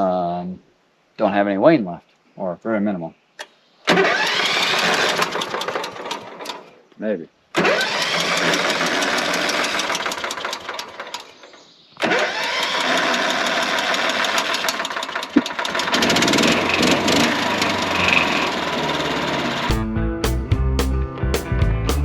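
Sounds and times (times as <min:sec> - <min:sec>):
sawmill engine running: 0:03.9 - 0:06.6, 0:07.6 - 0:11.3, 0:12.0 - 0:19.8.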